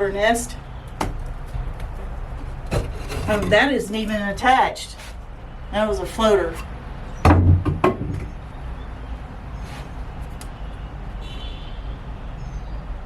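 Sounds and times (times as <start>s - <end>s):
scrap wood knock: 2.7s - 3.7s.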